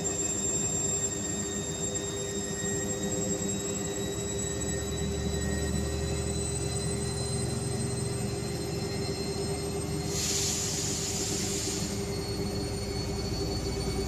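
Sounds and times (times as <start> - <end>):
hiss: 10.1 - 12.2.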